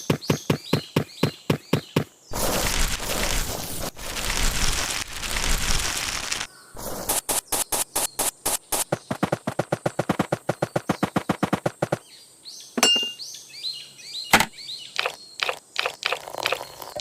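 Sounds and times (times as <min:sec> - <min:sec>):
rough scraping: 0:02.3 - 0:07.4.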